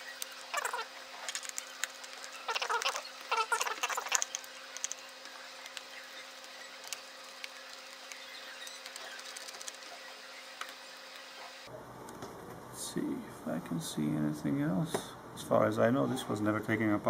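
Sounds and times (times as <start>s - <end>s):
plastic parts scraping and rattling: 0.0s - 10.8s.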